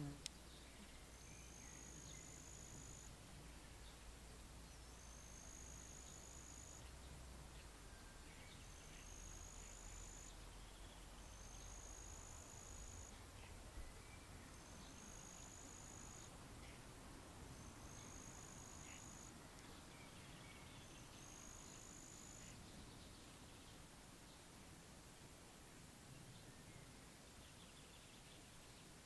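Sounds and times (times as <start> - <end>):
low rumble of wind: 0.0 - 15.5, 16.1 - 29.0
faint bird chirps: 0.0 - 16.9, 17.5 - 24.5
high-pitched insect trill: 14.6 - 16.3.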